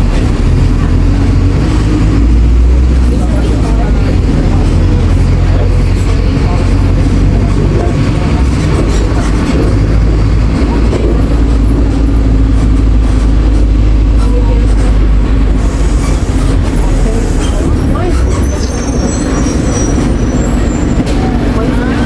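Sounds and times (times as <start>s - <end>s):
bus engine and road rumble: 0.0s - 22.0s
faint passenger murmur: 14.1s - 22.0s.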